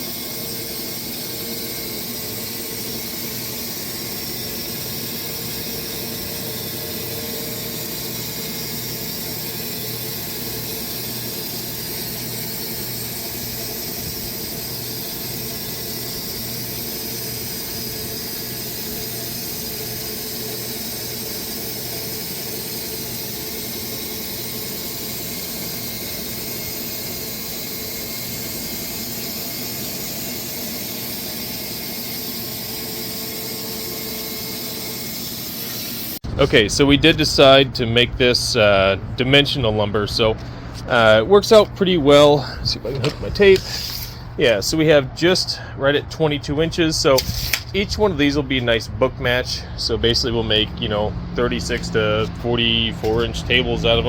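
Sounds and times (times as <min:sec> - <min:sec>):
sawmill cutting log: 0:00.0 - 0:36.6.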